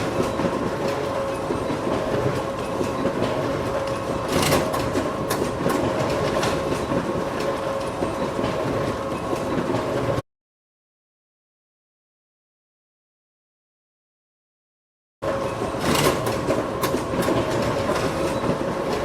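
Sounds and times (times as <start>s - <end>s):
photocopier whirring and clattering: 0.0s - 10.2s, 15.2s - 19.0s.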